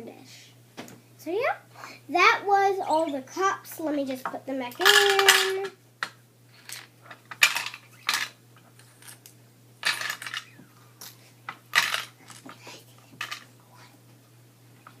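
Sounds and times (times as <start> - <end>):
toy dishes clattering: 4.8 - 5.7, 6.6 - 9.2, 9.8 - 10.6, 11.7 - 12.5, 13.2 - 13.5.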